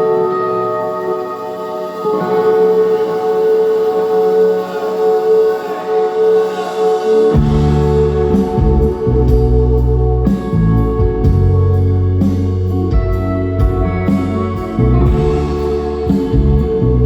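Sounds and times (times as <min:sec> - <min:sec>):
ringing guitar chords: 0:00.0 - 0:17.0
heavy bass: 0:07.4 - 0:17.0.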